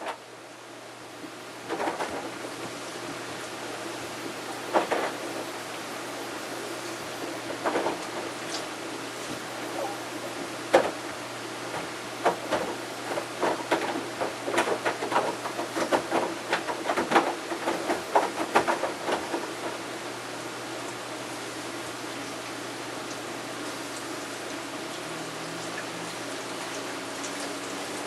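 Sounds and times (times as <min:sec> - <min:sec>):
washer-dryer humming: 0:00.0 - 0:28.0
washing machine knocking: 0:11.7 - 0:19.8.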